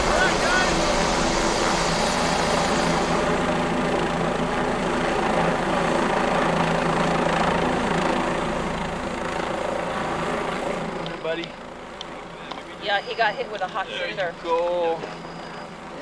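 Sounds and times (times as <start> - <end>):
helicopter engine and rotor: 0.0 - 16.0.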